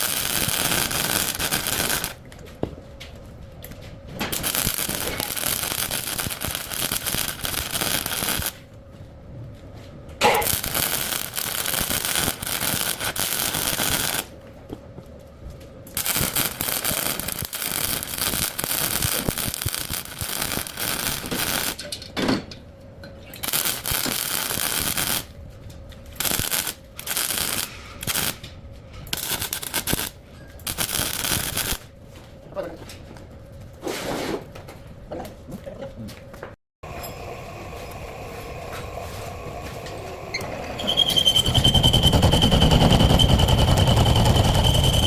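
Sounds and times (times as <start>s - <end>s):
arc welding crackle: 0.0s - 2.5s, 3.6s - 8.7s, 10.2s - 14.4s, 15.4s - 21.9s, 23.2s - 31.9s, 37.7s - 45.0s.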